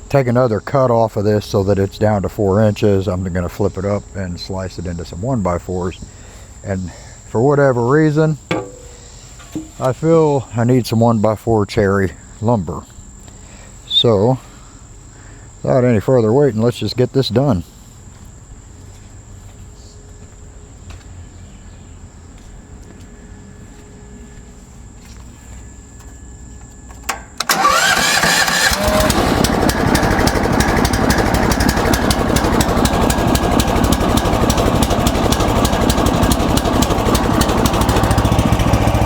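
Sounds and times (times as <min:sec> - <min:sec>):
insects buzzing: 0:00.0 - 0:39.0
sawmill engine running: 0:07.3 - 0:10.6, 0:27.0 - 0:39.0.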